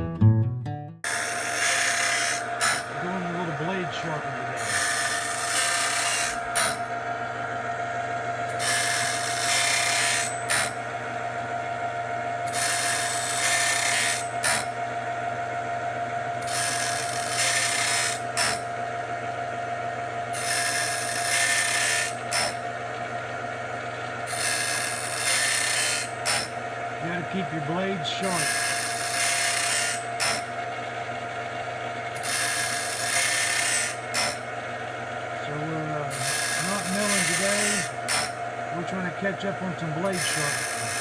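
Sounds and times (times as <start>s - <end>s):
steady motor hum: 1.0s - 41.0s
high grinding hiss: 1.1s - 6.9s, 24.3s - 30.4s, 35.4s - 41.0s.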